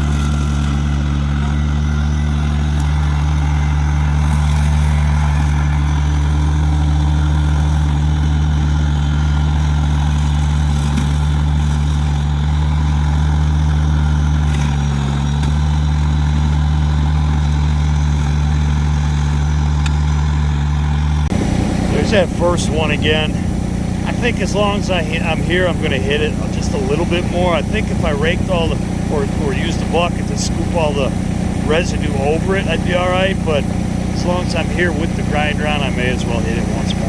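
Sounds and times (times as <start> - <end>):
tractor diesel engine running: 0.0 - 37.0.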